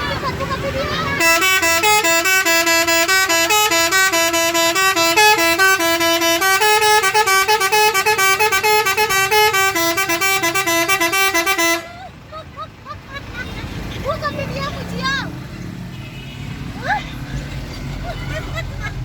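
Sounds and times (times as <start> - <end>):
musical air horn warbling: 1.2 - 11.9.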